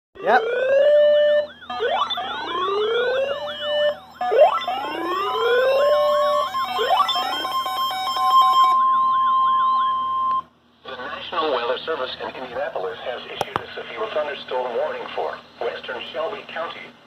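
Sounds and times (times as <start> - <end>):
wailing siren sweeps: 0.2 - 10.4
electronic sirens warbling: 0.2 - 10.5
steady high siren tone: 0.2 - 10.5.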